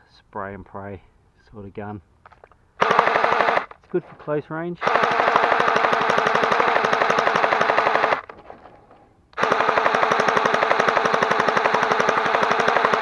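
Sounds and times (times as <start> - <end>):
gel blaster firing full auto: 2.8 - 3.7, 4.8 - 8.3, 9.4 - 13.0.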